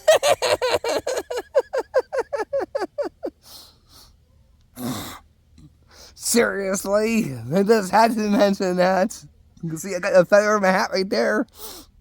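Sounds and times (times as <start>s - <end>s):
man laughing: 0.0s - 3.4s.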